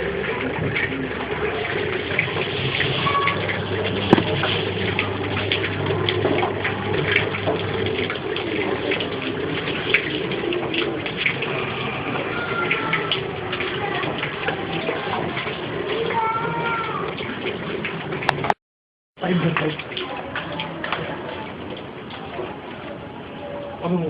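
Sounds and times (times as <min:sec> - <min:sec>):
electric pump motor hum: 0:00.0 - 0:18.6
water gushing through pipes: 0:00.0 - 0:18.6, 0:19.2 - 0:24.0.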